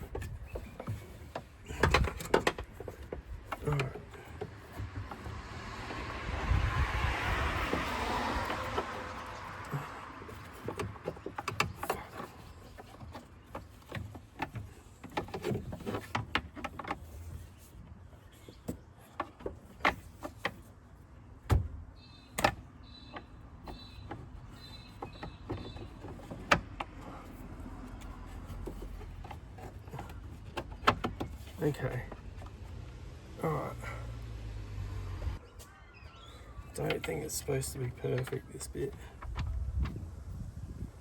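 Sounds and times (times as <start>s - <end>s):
plastic squeaking: 0.0s - 5.3s, 21.4s - 32.8s.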